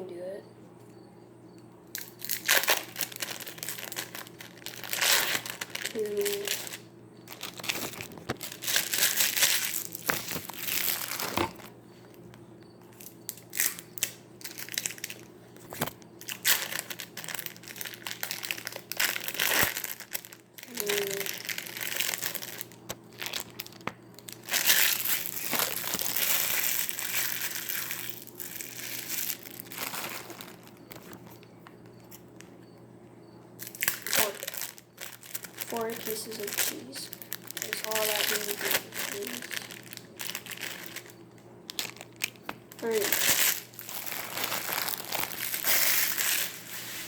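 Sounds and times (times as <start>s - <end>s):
plastic wrappers crinkling: 1.9s - 32.7s, 33.6s - 47.0s.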